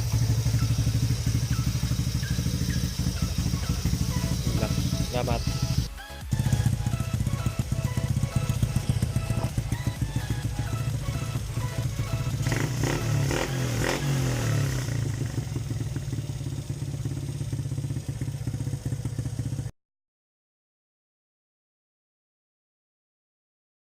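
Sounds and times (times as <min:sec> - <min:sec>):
engine tappets ticking: 0:00.0 - 0:18.8
motorcycle engine running: 0:00.0 - 0:19.7.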